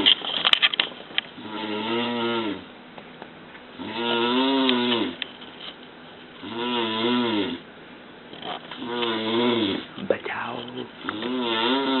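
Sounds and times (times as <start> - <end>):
man snoring: 1.4 - 2.6, 3.8 - 5.2, 6.4 - 7.6, 8.8 - 12.0.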